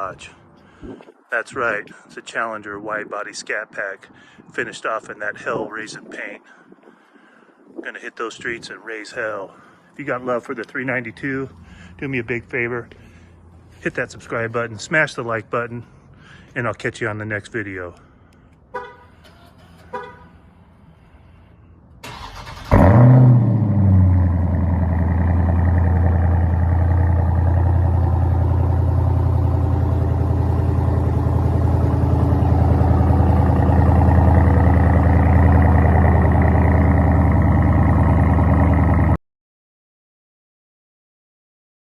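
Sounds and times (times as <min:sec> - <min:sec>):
car engine starting and idling: 0:18.8 - 0:39.2.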